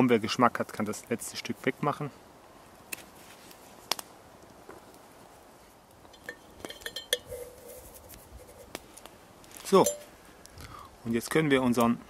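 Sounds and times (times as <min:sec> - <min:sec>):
metal bottle clinking: 0:06.2 - 0:07.4, 0:09.8 - 0:10.1.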